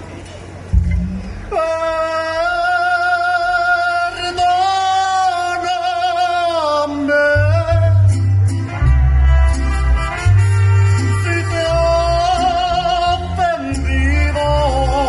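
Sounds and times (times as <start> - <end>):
low bass notes: 0.6 - 15.0
man singing held high note: 1.0 - 8.2, 10.8 - 15.0.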